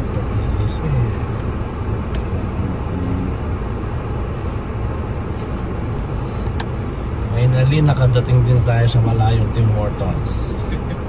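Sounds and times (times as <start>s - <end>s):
car road noise: 0.0s - 11.0s.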